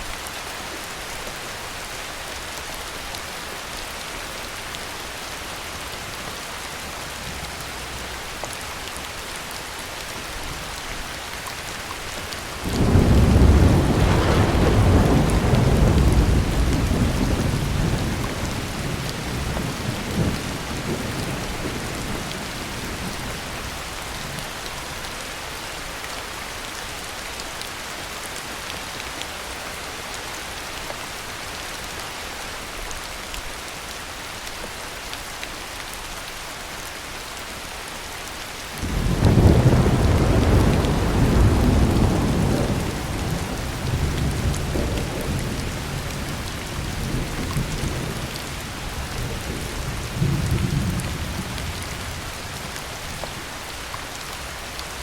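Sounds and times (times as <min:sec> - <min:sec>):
heavy rain: 0:00.0 - 0:55.0
thunder rumbling: 0:12.6 - 0:23.3, 0:38.8 - 0:52.4
loud thunder peal: 0:12.8 - 0:18.2.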